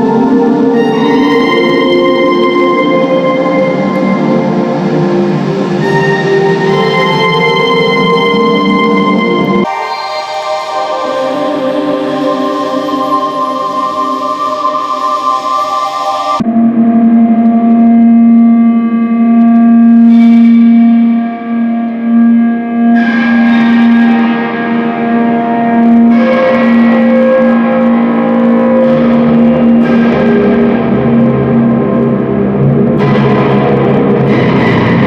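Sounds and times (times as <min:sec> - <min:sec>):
low drone: 0:00.0 - 0:18.9
sustained reverberant tones: 0:00.0 - 0:35.0.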